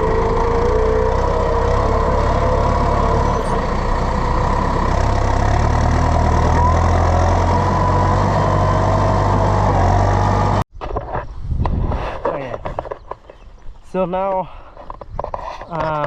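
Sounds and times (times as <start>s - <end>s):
tractor engine running: 0.0s - 10.6s.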